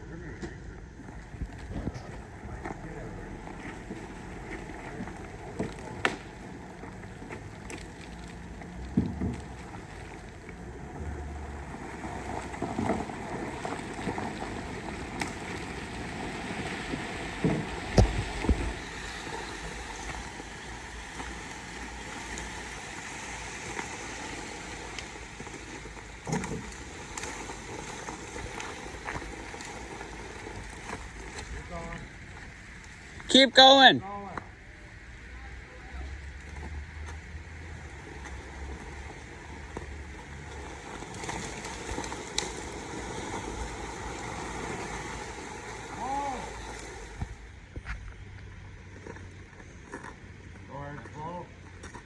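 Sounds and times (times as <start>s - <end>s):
branch scraping behind vehicle: 0.0s - 33.4s, 36.0s - 52.0s
sharp cracks and knocks: 5.5s - 6.4s.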